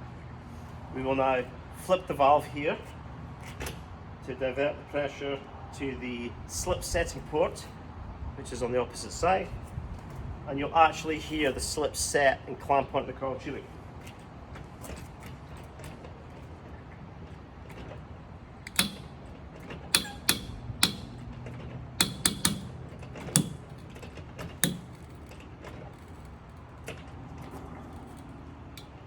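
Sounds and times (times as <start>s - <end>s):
steady low hum: 18.4s - 29.0s
sharp metallic clicks: 18.7s - 26.9s.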